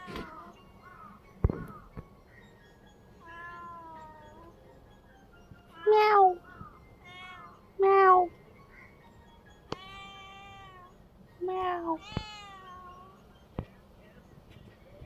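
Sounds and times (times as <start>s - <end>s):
cat meowing: 3.2s - 4.5s, 5.7s - 8.3s, 9.7s - 13.2s.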